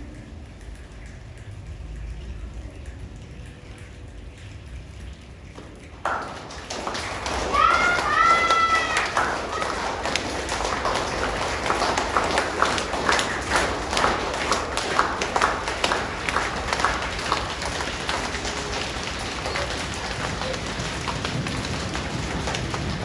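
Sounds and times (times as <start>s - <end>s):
children clapping and slapping hands: 5.6s - 23.0s.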